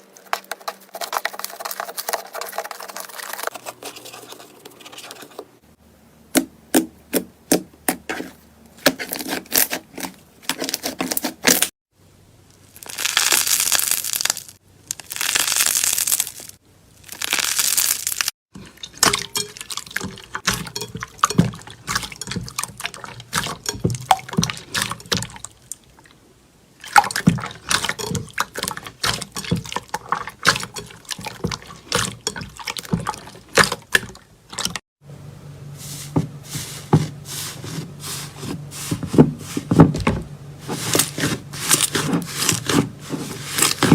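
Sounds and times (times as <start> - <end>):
slime popping and crackling: 12.8 - 18.3.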